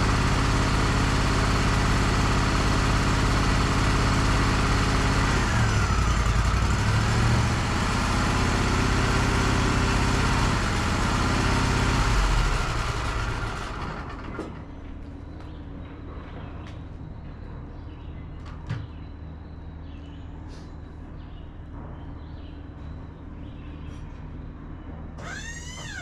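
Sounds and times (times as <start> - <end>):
sawmill engine running: 0.0 - 14.7, 25.2 - 26.0.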